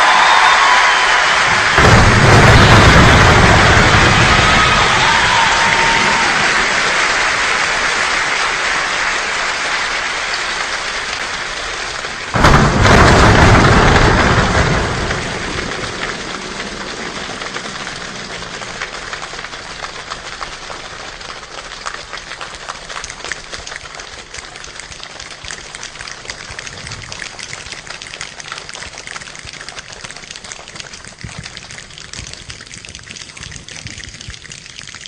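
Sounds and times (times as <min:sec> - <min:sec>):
loud burst: 0:00.0 - 0:07.8, 0:12.3 - 0:19.8
rain falling: 0:00.0 - 0:35.0.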